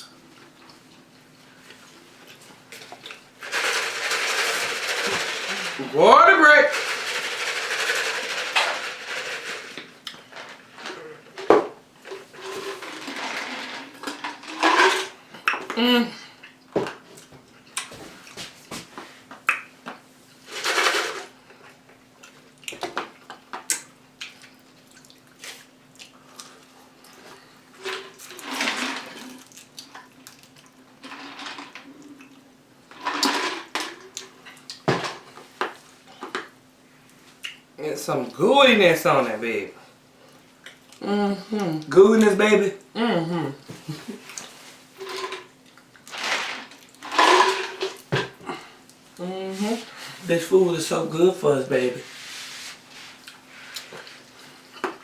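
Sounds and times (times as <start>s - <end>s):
chewing and crunching chips: 21.5s - 33.3s.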